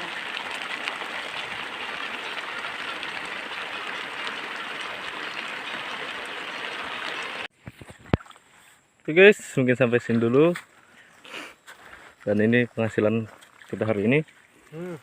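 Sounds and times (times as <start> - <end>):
rain falling: 0.0 - 7.5.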